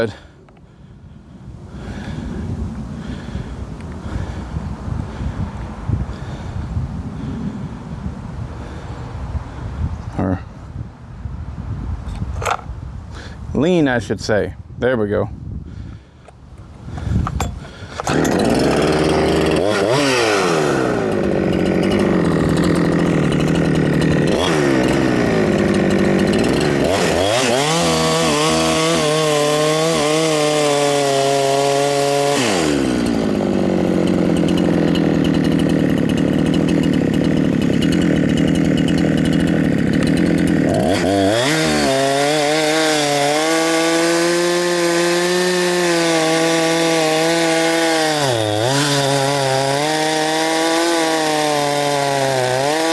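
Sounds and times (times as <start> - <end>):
chainsaw revving: 16.8 - 52.9.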